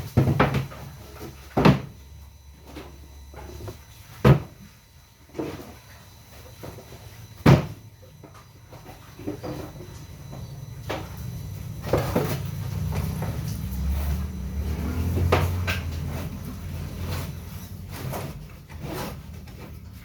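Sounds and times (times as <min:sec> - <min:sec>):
circular saw motor humming: 0:09.4 - 0:18.2.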